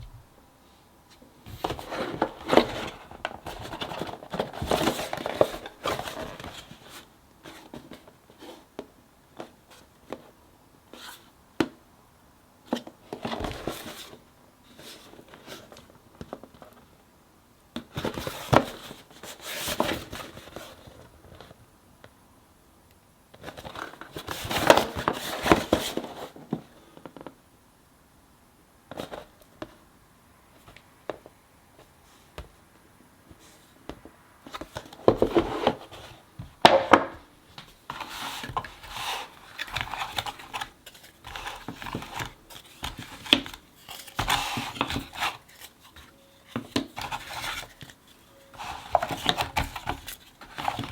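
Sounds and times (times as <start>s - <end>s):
cardboard puzzle pieces rustling: 34.5s - 50.9s.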